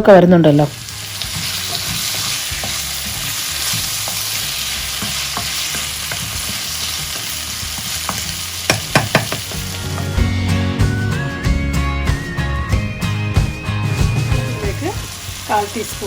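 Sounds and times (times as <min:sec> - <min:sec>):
background music: 0:00.0 - 0:16.0
food sizzling in a pan: 0:00.4 - 0:10.4, 0:13.8 - 0:16.0.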